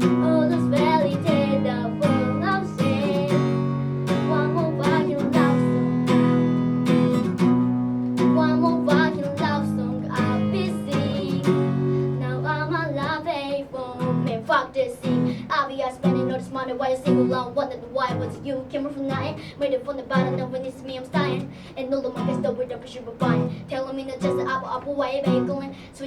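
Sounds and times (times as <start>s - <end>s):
acoustic guitar strumming: 0.0s - 26.0s.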